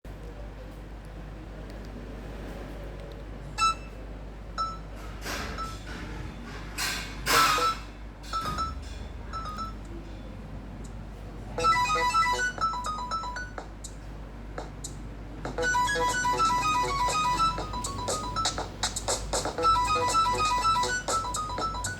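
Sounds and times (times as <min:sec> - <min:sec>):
phone ringtone melody: 0:09.4 - 0:09.8, 0:11.6 - 0:13.7, 0:15.5 - 0:21.9
phone short beeps: 0:09.4 - 0:09.8, 0:11.6 - 0:13.6, 0:15.6 - 0:18.7, 0:19.6 - 0:21.9.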